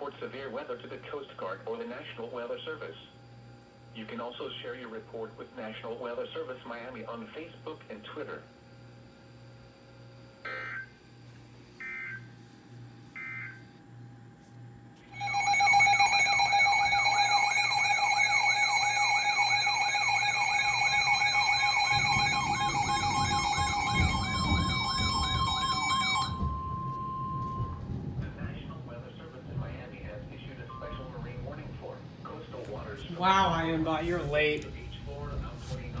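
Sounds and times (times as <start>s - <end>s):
steady tone: 15.0s - 29.6s
digital header tones: 15.1s - 27.9s, 30.7s - 31.2s
electronic siren sweeping: 15.1s - 27.9s.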